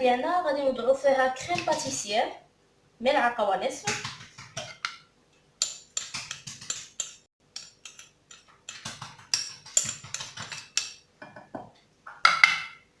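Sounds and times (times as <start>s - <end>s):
spoon clinking against saucepan: 5.6s - 11.5s.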